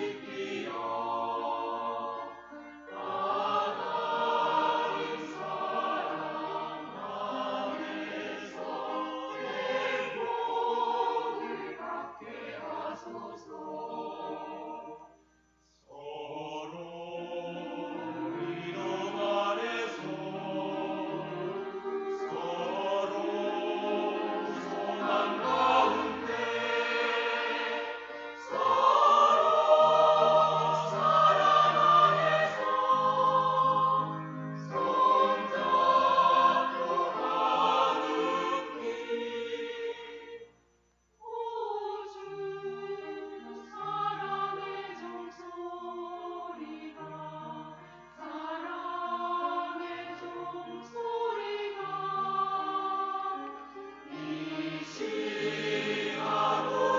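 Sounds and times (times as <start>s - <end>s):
choir singing a hymn: 0.0s - 56.9s.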